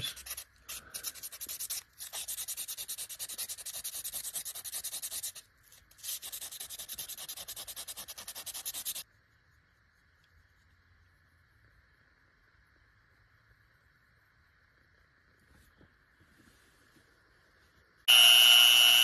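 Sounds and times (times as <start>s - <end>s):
sandpaper strokes on knife handle: 0.0s - 9.0s.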